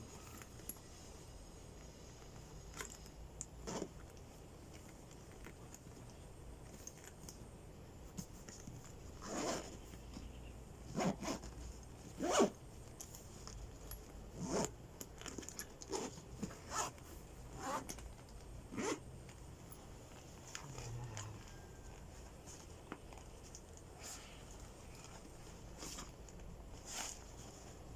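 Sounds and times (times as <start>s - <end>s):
zipper being pulled: 3.6s - 4.0s, 9.1s - 9.9s, 10.9s - 12.6s, 14.3s - 18.0s, 18.7s - 19.0s, 26.8s - 27.6s.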